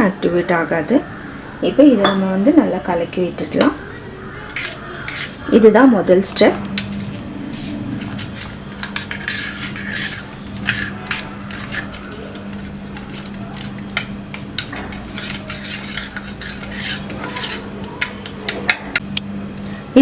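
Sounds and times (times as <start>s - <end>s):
spoon clinking and scraping: 4.4s - 5.5s, 6.7s - 19.0s.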